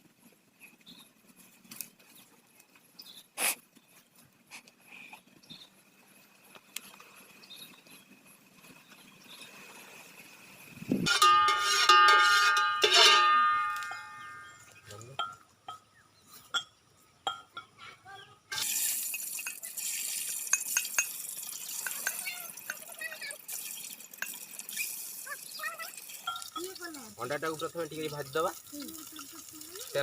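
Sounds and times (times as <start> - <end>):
steady hiss: 5.9 - 11.6, 18.5 - 30.0
metal pot clanking: 11.0 - 14.6, 15.2 - 17.8, 18.5 - 19.7, 20.3 - 22.9, 26.1 - 26.9.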